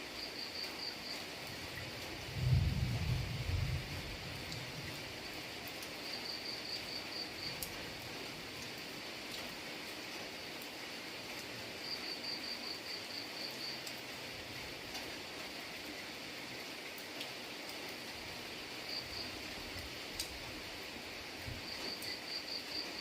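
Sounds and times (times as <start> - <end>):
steady rain: 0.0 - 23.0
insect chirping: 5.8 - 7.8, 11.8 - 13.9, 18.5 - 19.9, 21.4 - 23.0.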